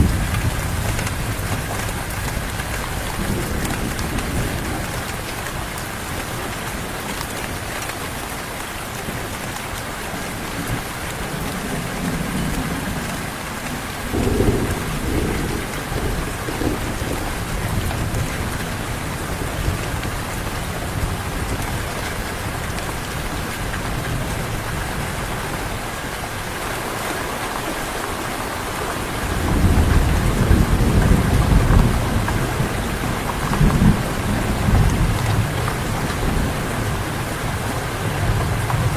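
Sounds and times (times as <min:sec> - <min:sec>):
thunder rolling: 0:00.0 - 0:05.2, 0:10.6 - 0:24.4, 0:29.2 - 0:38.9
heavy rain: 0:00.0 - 0:38.9.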